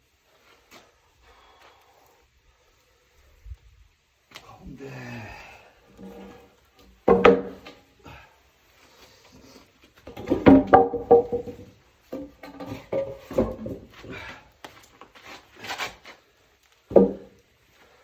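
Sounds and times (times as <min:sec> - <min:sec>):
firewood logs knocking: 0:05.9 - 0:07.9, 0:10.0 - 0:15.2, 0:16.8 - 0:17.5.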